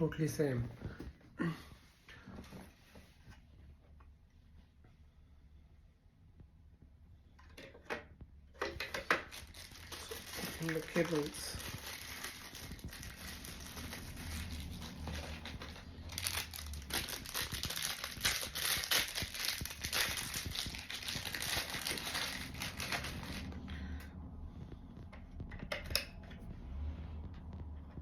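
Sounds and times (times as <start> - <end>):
plastic packaging crinkling: 8.6 - 24.0.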